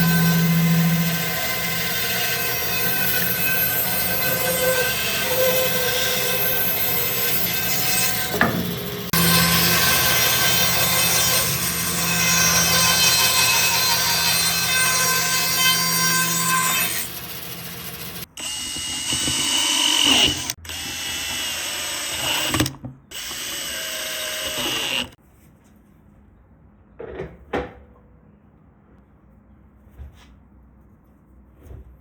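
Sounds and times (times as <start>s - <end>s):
power tool cutting wood: 0.0s - 25.2s.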